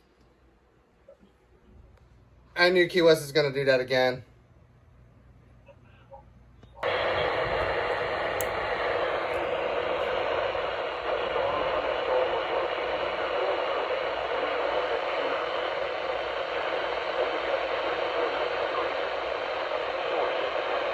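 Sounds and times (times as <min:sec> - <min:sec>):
radio static hiss: 0:05.6 - 0:20.9.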